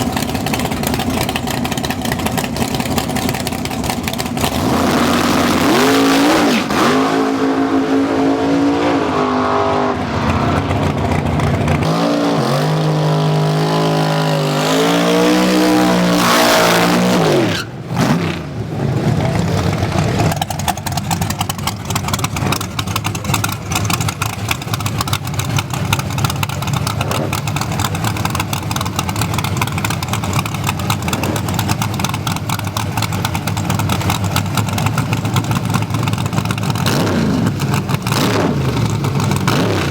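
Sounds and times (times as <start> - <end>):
engine choppy idle: 0.0 - 5.7, 10.0 - 11.9, 18.5 - 39.9
race car engine revving: 0.6 - 39.9.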